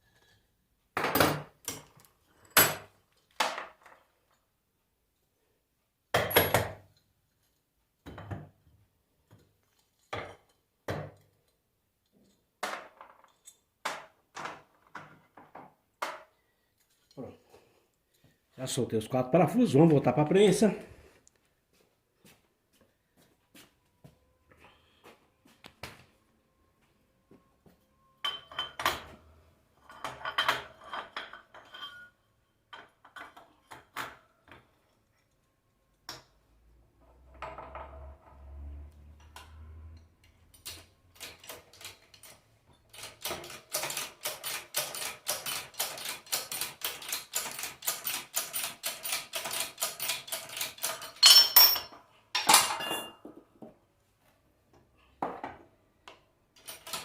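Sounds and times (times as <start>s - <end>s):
metal tools clinking: 13.2s - 13.7s, 28.2s - 29.1s, 29.8s - 33.9s, 39.3s - 53.2s.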